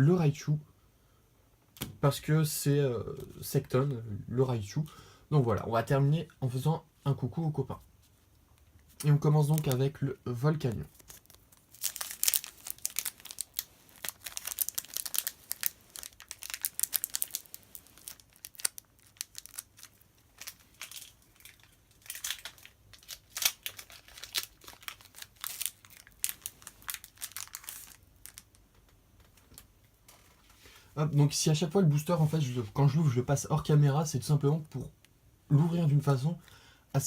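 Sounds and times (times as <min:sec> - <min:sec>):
foil wrapper crinkling: 0:09.1 - 0:09.9, 0:10.7 - 0:28.7
foil wrapper tearing: 0:10.9 - 0:28.6.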